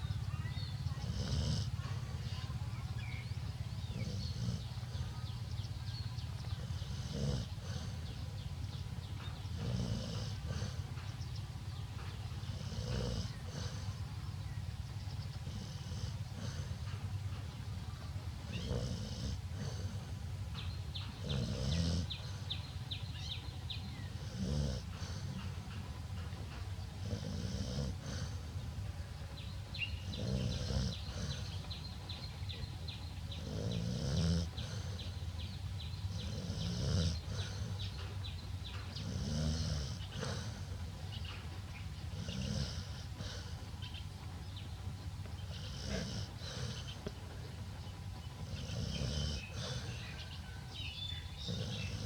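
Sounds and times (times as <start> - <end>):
woman snoring loudly: 6.8 - 7.9, 21.2 - 22.1, 24.2 - 25.3, 27.0 - 28.3, 30.1 - 31.4, 33.4 - 35.0, 36.2 - 37.7, 39.0 - 40.6, 42.1 - 43.4, 45.5 - 46.8, 48.4 - 49.9.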